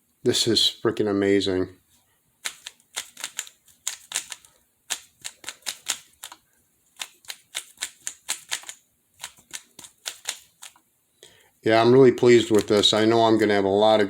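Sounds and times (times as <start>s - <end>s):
puzzle cube clicking: 2.4s - 6.4s, 7.0s - 10.8s, 12.4s - 12.9s.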